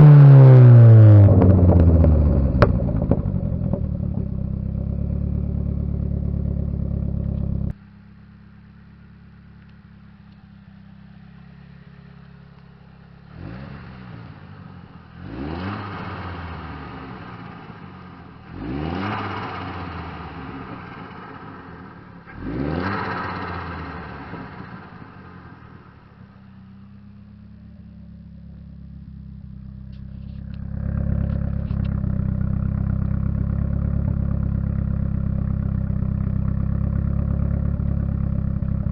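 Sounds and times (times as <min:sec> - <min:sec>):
car engine revving: 0:00.0 - 0:07.8, 0:08.7 - 0:38.9.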